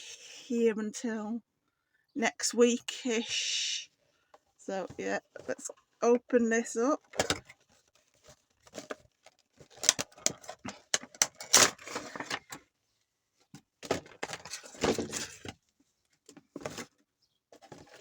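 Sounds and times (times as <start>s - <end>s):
cardboard and plastic packaging rustling: 6.9s - 18.0s.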